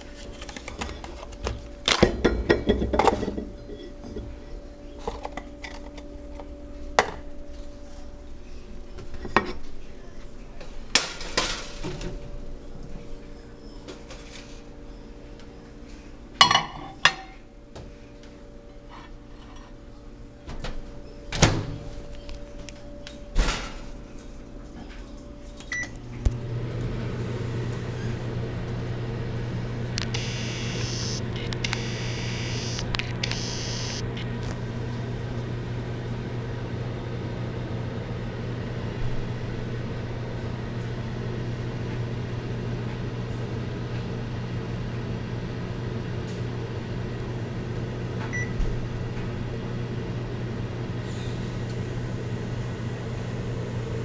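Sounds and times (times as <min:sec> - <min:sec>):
microwave oven humming: 0:00.0 - 0:54.0
microwave beep: 0:25.7 - 0:26.0, 0:30.0 - 0:34.0, 0:48.3 - 0:48.6.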